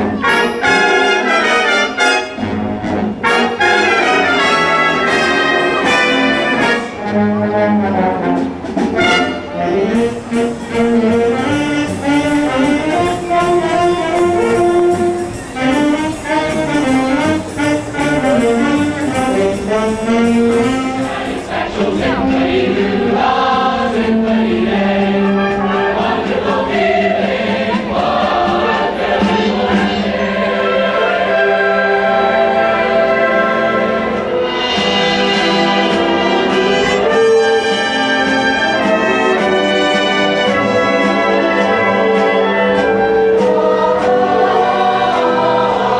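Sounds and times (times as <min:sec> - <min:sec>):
live brass band playing: 0:00.0 - 0:45.9
steady high ticking beat: 0:09.8 - 0:30.5.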